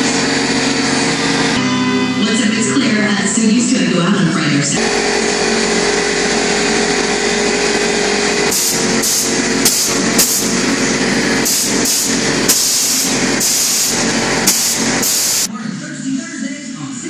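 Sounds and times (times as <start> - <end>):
air compressor running: 0.0 - 1.8, 4.6 - 15.5
texture sprayer hissing blasts: 4.8 - 15.5.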